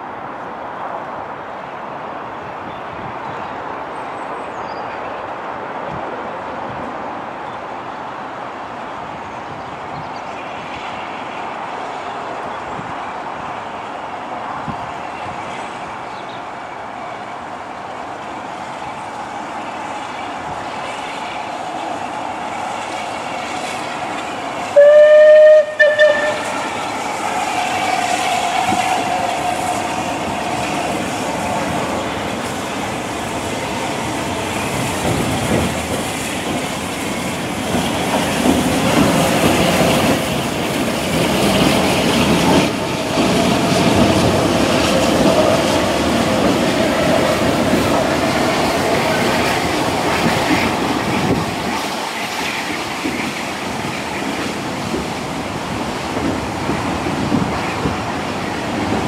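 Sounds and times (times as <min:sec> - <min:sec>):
train wheels clicking over rail joints: 0:26.1 - 0:59.0.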